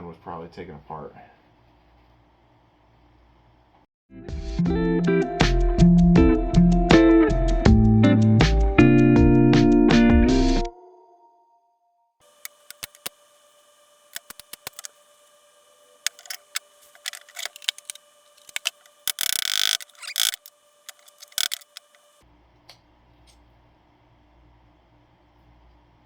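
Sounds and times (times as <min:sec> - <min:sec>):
metal parts clicking: 0:12.5 - 0:13.1, 0:14.2 - 0:14.9, 0:16.1 - 0:22.1
metal scraping rasp: 0:16.1 - 0:22.0.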